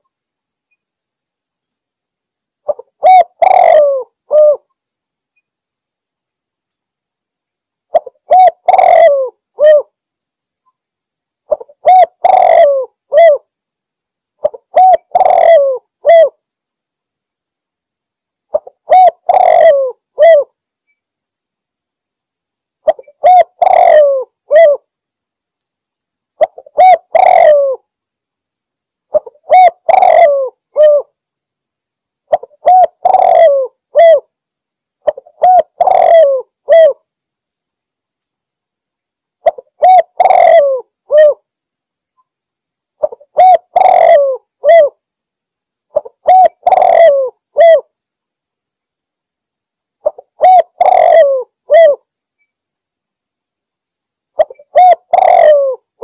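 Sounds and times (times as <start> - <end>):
dove cooing: 2.7 - 4.7, 7.9 - 9.9, 11.5 - 13.5, 14.4 - 16.4, 18.5 - 20.5, 22.8 - 24.8, 26.4 - 27.8, 29.1 - 31.1, 32.3 - 34.3, 35.0 - 37.0, 39.4 - 41.4, 43.0 - 45.0, 45.9 - 47.9, 50.0 - 52.0, 54.4 - 55.9.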